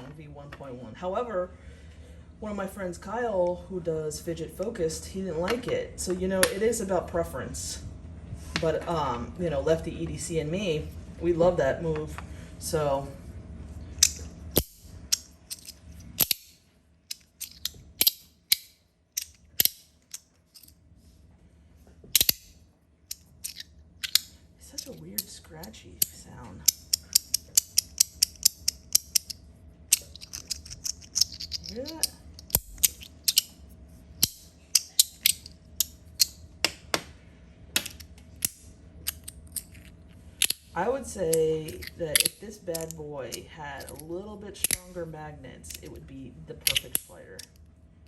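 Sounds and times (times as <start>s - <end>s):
magnetic pieces snapping clicks: 14.0s - 20.7s, 22.1s - 22.5s, 23.1s - 25.3s, 26.0s - 33.6s, 34.2s - 37.0s, 37.8s - 44.9s, 45.7s - 46.0s, 46.6s - 47.7s.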